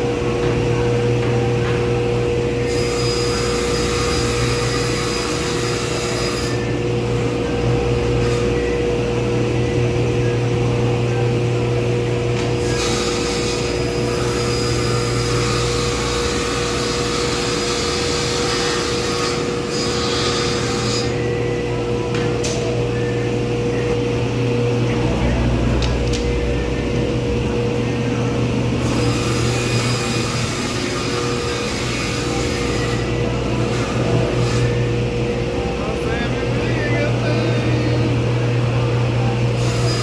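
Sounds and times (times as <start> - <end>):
electric saw cutting board: 2.6 - 7.4, 12.4 - 21.3, 28.8 - 35.0, 39.6 - 40.0.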